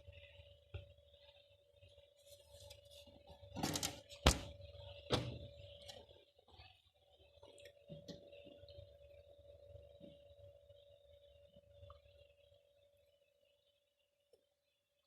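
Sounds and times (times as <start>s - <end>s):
faint steady tone: 4.6s - 15.0s.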